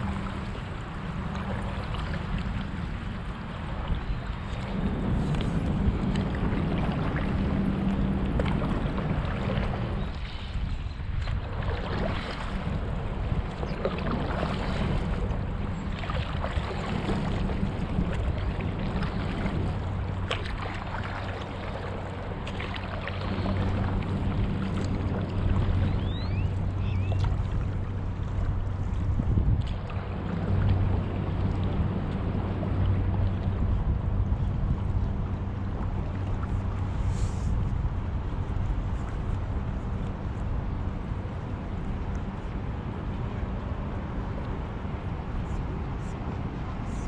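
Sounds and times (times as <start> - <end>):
paddle splashing in water: 0.0 - 40.5
water moving around board: 0.0 - 47.0
wind rumble on microphone: 0.0 - 47.0.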